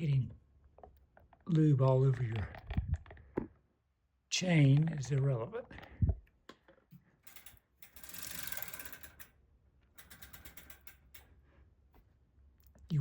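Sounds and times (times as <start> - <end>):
bicycle chain whirring over sprockets: 7.2 - 9.4, 10.0 - 11.3
freewheel ratchet clicking: 7.2 - 9.4, 10.0 - 11.3.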